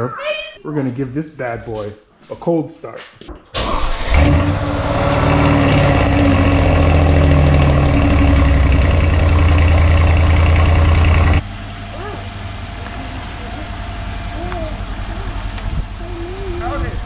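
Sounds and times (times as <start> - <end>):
car engine high idle: 5.5 - 16.8.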